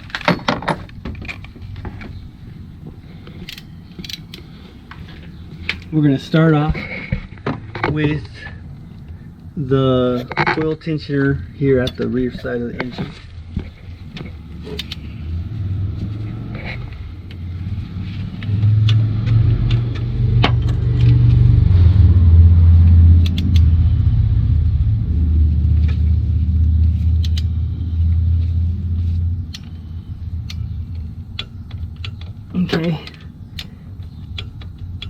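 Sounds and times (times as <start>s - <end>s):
loud low rumble: 14.4s - 31.4s.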